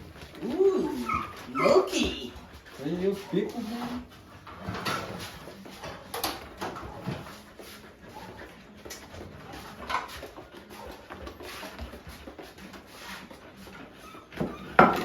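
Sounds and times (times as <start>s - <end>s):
cat crying: 0.4s - 2.4s.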